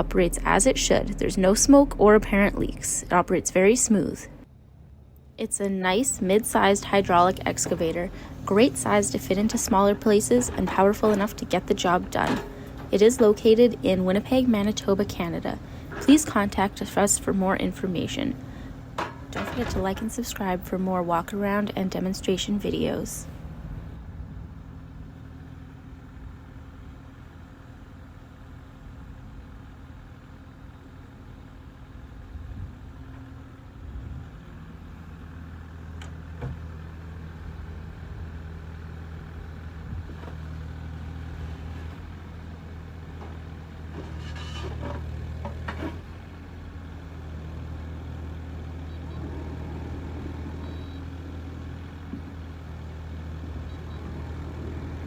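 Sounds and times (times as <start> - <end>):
excavator diesel engine running: 0.0 - 55.0
sharp knocks and clanks: 18.9 - 20.1.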